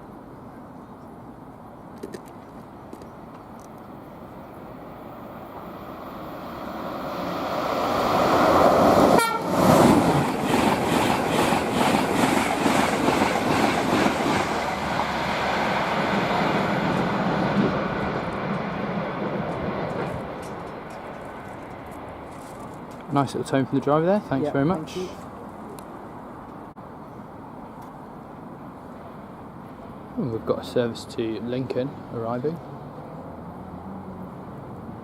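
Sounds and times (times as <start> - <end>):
train passing at speed: 2.6 - 35.0
train wheels clicking: 8.6 - 15.6
train horn: 9.1 - 9.6.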